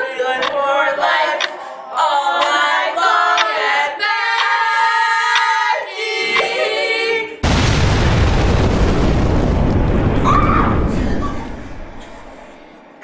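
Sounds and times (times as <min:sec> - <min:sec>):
group singing a cappella: 0:00.0 - 0:07.4.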